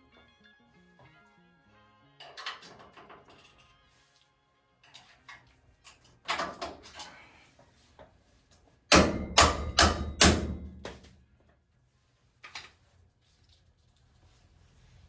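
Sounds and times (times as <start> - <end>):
metal parts clicking and knocking: 4.8 - 7.2
heavy metal strikes: 8.9 - 10.8.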